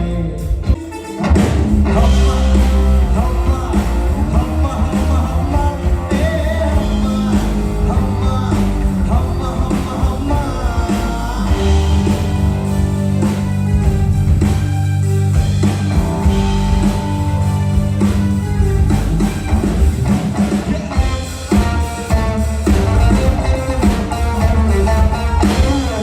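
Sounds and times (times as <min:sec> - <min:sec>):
guitar: 0:00.0 - 0:26.0
heavy bass line: 0:00.0 - 0:26.0
melody sung or played: 0:01.9 - 0:14.1.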